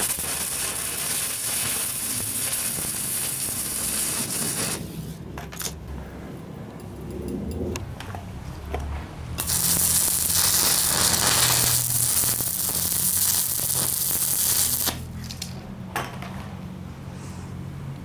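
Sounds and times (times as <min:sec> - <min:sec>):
welding arc crackling and hissing: 0:00.0 - 0:05.8, 0:09.4 - 0:15.1.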